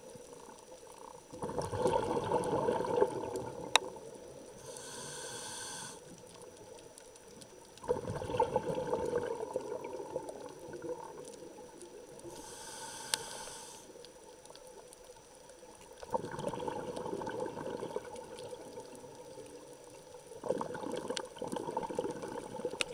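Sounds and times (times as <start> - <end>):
exhaled bubbles gurgling: 0.0 - 12.8, 15.6 - 22.9
regulator hiss on inhale: 4.4 - 6.3, 12.2 - 14.3.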